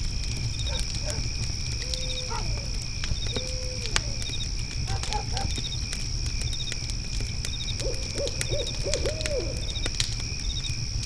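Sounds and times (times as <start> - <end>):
cricket chirps: 0.0 - 11.0
crickets trilling: 0.0 - 11.0
fire crackling: 0.0 - 11.0
owl hooting: 1.8 - 4.3, 4.9 - 5.6, 7.8 - 9.8.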